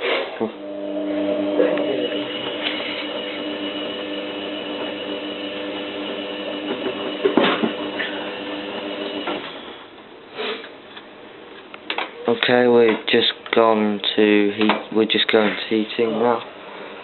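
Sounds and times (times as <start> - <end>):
washing machine motor whine: 0.4 - 10.0.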